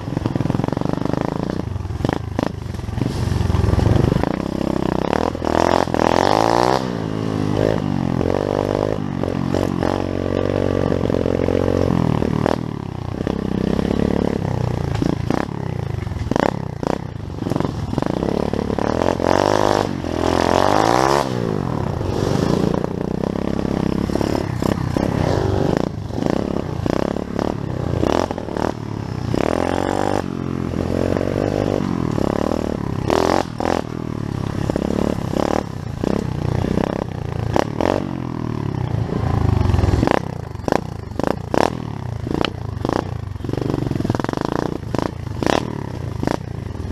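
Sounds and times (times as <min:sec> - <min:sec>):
small motorbike engine revving: 0:00.0 - 0:46.9.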